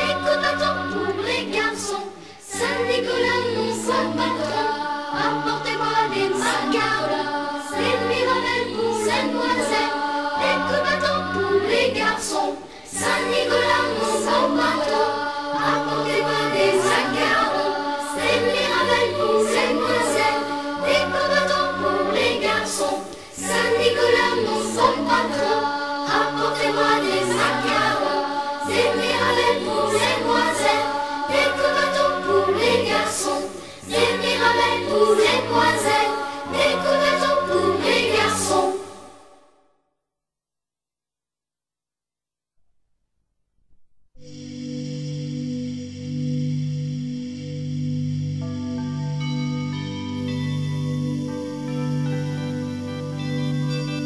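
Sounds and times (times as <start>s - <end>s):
choir singing: 0.0s - 39.5s, 44.2s - 54.0s
instrumental accompaniment: 44.3s - 54.0s.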